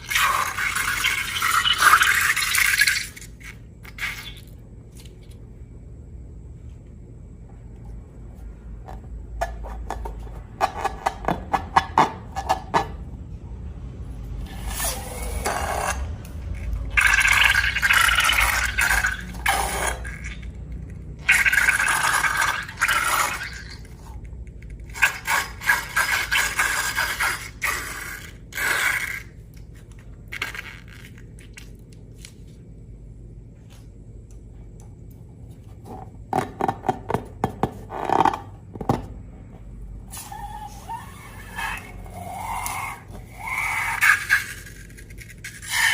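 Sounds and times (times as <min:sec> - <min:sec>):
scraping and rubbing slime and balloons: 0:21.2 - 0:32.6, 0:40.0 - 0:45.9.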